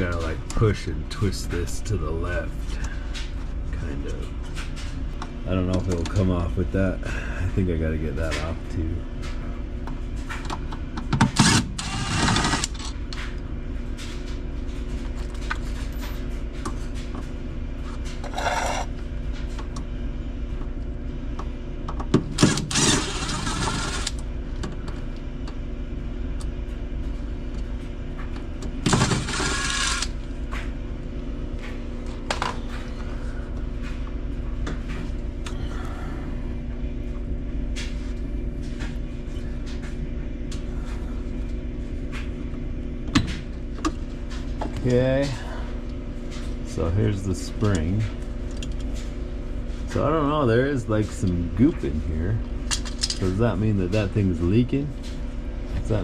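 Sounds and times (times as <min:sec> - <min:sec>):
machine hum: 0:00.0 - 0:56.0
parts scraping and clattering: 0:18.2 - 0:18.9, 0:28.9 - 0:30.1.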